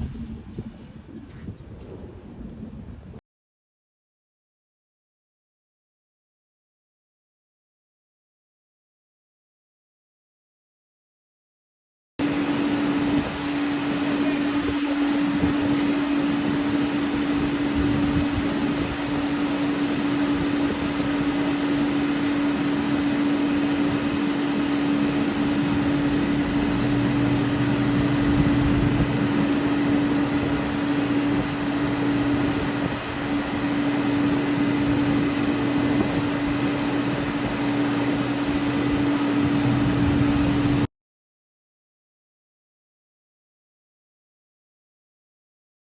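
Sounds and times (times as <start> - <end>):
steady machinery hum: 0.0 - 3.2, 12.2 - 40.9
lower steady tone: 12.2 - 40.9.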